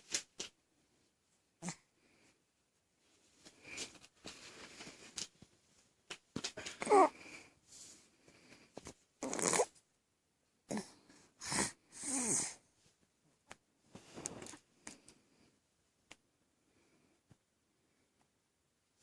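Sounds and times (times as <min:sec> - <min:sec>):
person snoring: 0:10.7 - 0:12.6.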